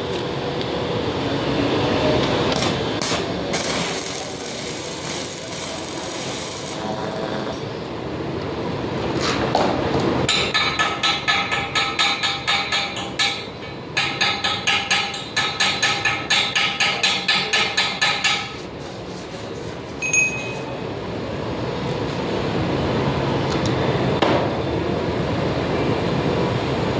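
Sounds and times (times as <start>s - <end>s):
hammer striking steel: 10.3s - 18.7s
metallic clink: 20.0s - 20.8s.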